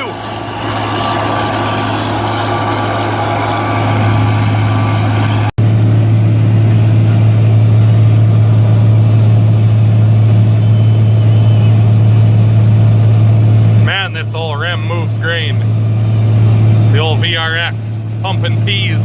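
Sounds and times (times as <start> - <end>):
grain vacuum droning: 0.0 - 19.0.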